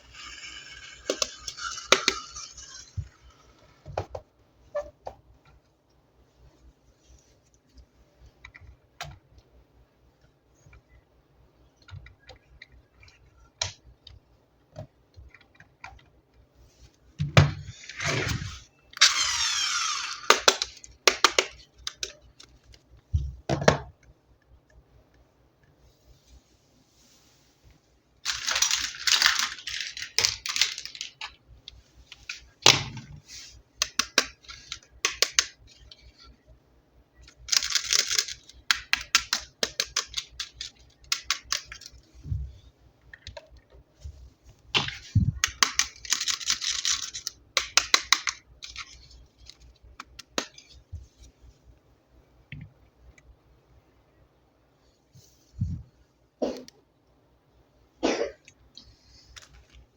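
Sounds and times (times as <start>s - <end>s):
clicks of small toy parts: 0.0s - 3.4s, 17.9s - 22.6s, 28.3s - 31.4s, 33.8s - 36.0s, 37.2s - 42.0s, 45.4s - 50.8s.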